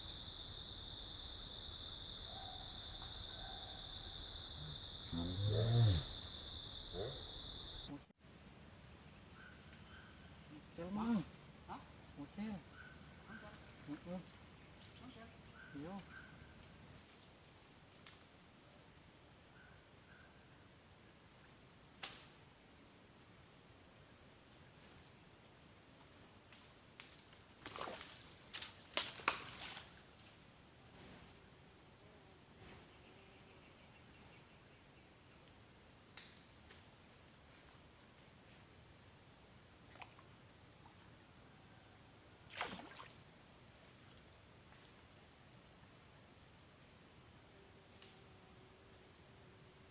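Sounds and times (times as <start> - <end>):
high-pitched insect chorus: 0.0 - 49.9
splashes: 27.6 - 30.0, 39.9 - 40.3, 42.5 - 43.2.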